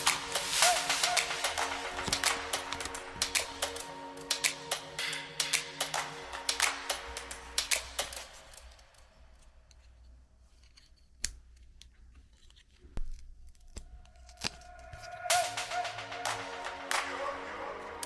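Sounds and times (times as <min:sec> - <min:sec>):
scissors snipping: 0:00.0 - 0:04.8, 0:10.6 - 0:15.6.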